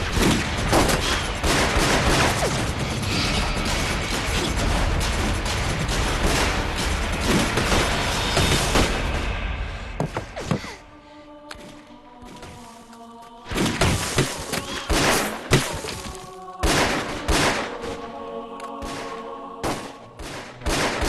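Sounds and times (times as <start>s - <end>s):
loud gunshots: 0.0s - 9.2s, 13.5s - 15.7s, 16.6s - 18.0s, 18.8s - 21.0s
dramatic background music: 0.0s - 21.0s.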